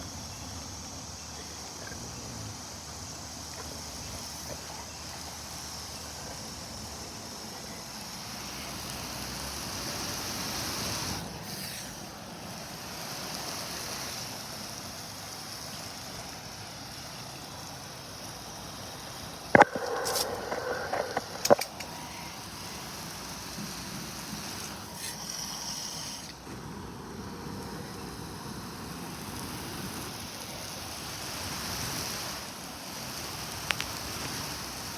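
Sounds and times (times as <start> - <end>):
water wash: 2.3 - 34.9
wind noise: 19.5 - 22.5.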